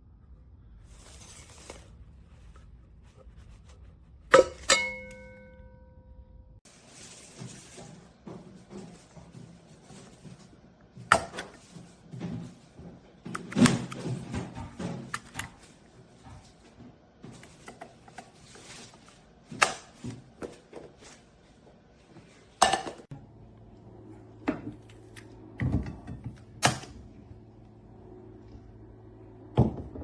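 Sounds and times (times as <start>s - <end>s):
low steady hum: 0.0s - 30.0s.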